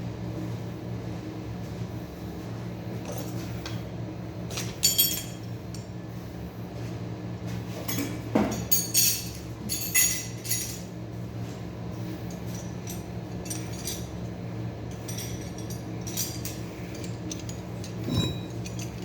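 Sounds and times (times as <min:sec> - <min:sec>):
steady low hum: 0:00.0 - 0:19.0
metal tools clinking: 0:04.6 - 0:05.4, 0:07.9 - 0:10.9, 0:12.4 - 0:14.2, 0:14.9 - 0:19.0.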